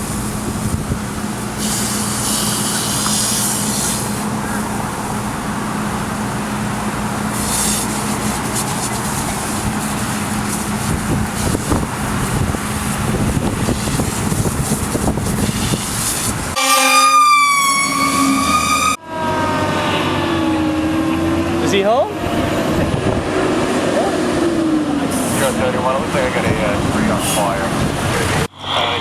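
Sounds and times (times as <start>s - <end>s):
vehicle engine with road noise: 0.0s - 29.0s
fire truck horn tone: 1.6s - 22.8s
siren wail falling in pitch: 16.6s - 23.2s.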